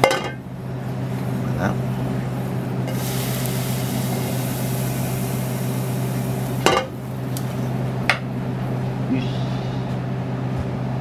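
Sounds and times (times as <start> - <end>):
steady low hum: 0.0 - 11.0
water drops hissing in frying pan: 2.8 - 8.3.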